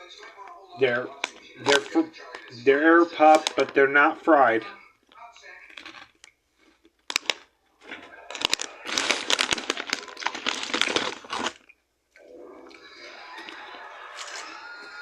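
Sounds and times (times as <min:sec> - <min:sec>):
chewing crunchy chips: 0:01.1 - 0:03.8, 0:05.2 - 0:15.0.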